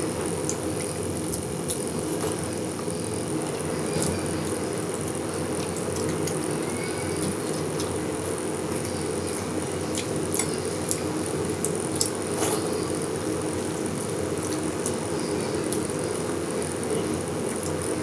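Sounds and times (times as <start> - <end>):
steady low hum: 0.0 - 18.0
chewing and mouth sounds: 4.0 - 12.7.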